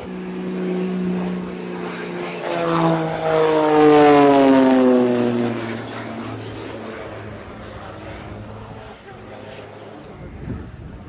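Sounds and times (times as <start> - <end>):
propeller aircraft flying past: 0.0 - 11.0.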